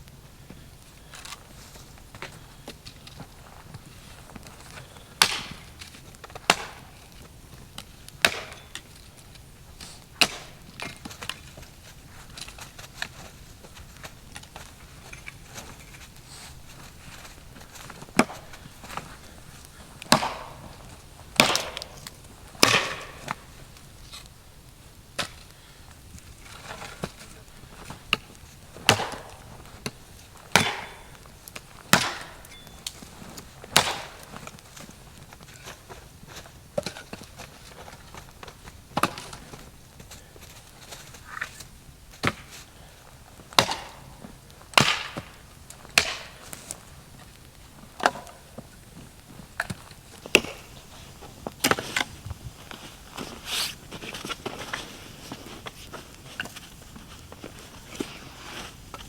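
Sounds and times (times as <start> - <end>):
wood chopping knocks: 20.1 - 20.8, 21.4 - 22.0, 22.6 - 23.4.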